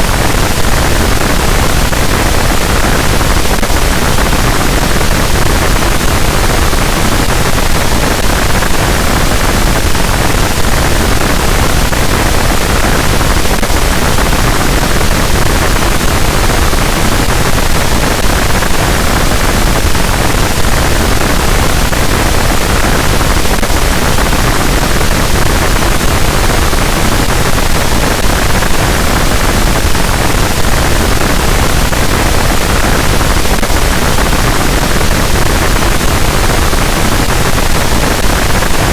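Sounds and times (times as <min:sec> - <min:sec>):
harsh static noise wall: 0:00.0 - 0:38.9.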